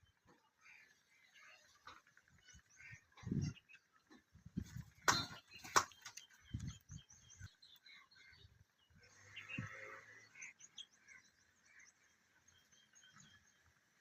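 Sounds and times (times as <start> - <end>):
distant birds chirping: 0.0 - 14.0.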